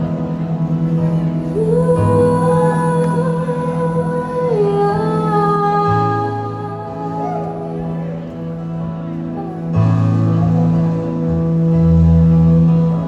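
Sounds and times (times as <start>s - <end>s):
low sustained accompaniment: 0.0s - 13.0s
person singing held notes: 6.9s - 8.5s.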